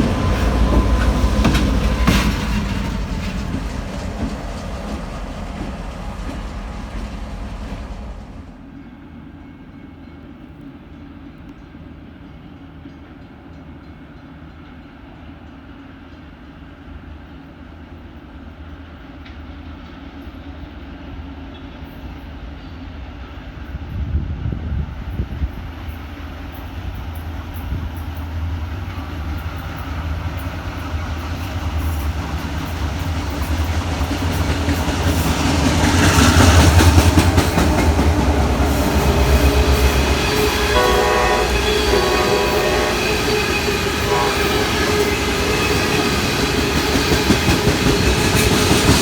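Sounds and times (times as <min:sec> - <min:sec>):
diesel engines rumbling: 0:00.0 - 0:08.6
train cars rattling: 0:00.0 - 0:08.7, 0:26.5 - 0:49.0.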